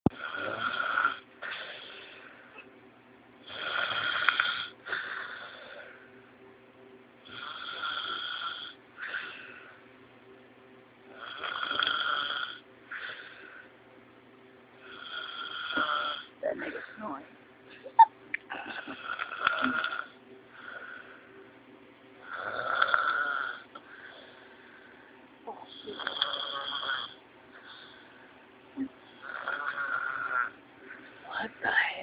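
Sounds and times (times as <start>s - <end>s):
man snoring loudly: 0.2s - 1.9s, 3.4s - 5.8s, 7.3s - 8.8s, 11.2s - 12.6s, 14.8s - 16.3s, 18.9s - 20.9s, 22.2s - 23.8s, 25.7s - 27.2s, 29.2s - 30.6s.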